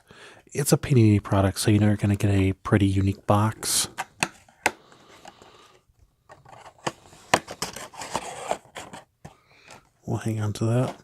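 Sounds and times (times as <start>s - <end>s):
cardboard box rustling and scraping: 6.4s - 9.1s.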